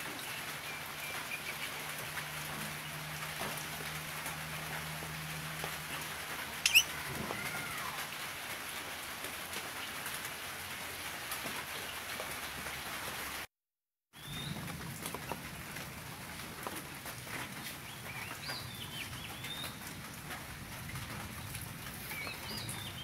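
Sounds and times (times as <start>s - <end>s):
rain hiss: 0.0s - 13.5s
parrot calling: 6.6s - 7.0s.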